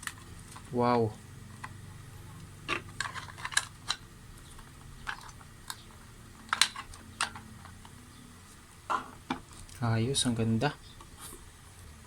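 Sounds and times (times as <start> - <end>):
faint low hum: 0.0 - 12.0
plastic parts clicking: 2.6 - 8.0.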